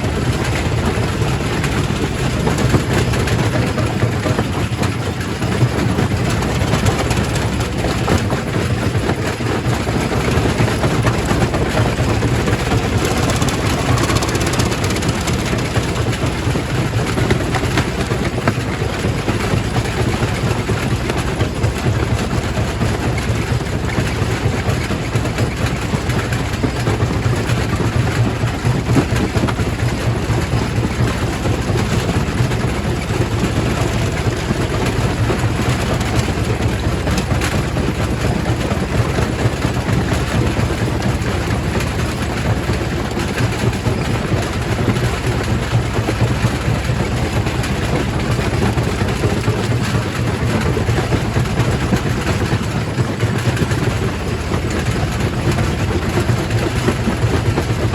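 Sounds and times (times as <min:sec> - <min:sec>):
rock crusher rumbling: 0:00.0 - 0:24.8.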